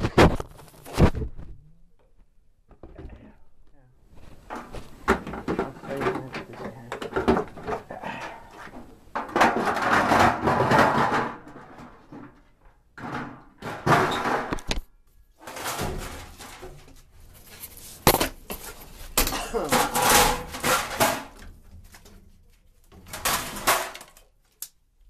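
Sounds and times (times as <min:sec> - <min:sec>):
sheet metal scraping and sliding: 0:15.4 - 0:16.8, 0:19.7 - 0:21.4.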